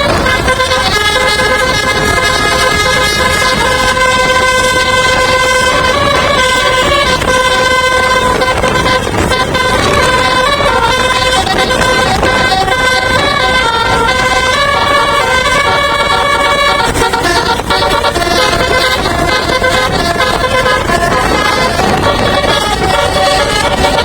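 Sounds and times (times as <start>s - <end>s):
low engine rumble: 0.0s - 24.0s
musical air horn playing a tune: 0.0s - 24.0s.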